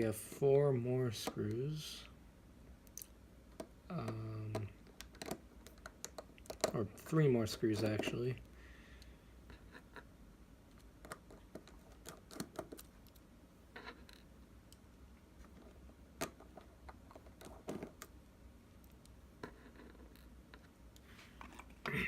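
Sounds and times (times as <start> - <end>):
small screwdriver clicking and scratching: 10.7 - 13.2.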